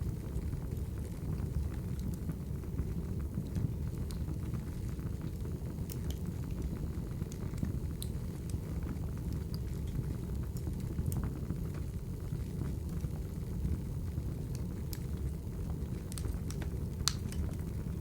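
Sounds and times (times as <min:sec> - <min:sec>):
wood fire crackling: 0:00.2 - 0:18.0
burning logs popping and snapping: 0:15.7 - 0:18.0.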